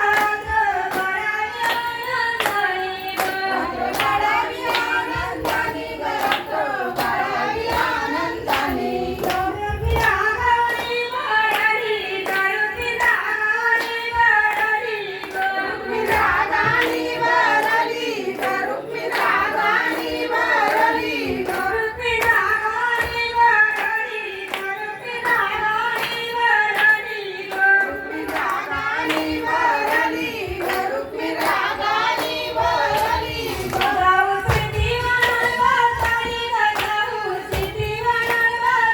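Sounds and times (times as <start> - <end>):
hands clapping a beat: 0.0 - 38.9
woman singing devotional song: 0.0 - 38.9.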